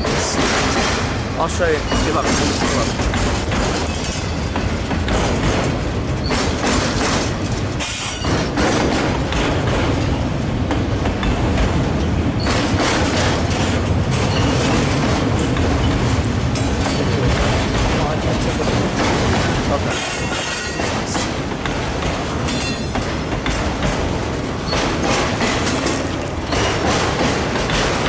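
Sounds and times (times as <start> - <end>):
train cars clacking: 0.0 - 28.0
train wheels rumbling on rail: 0.0 - 28.0.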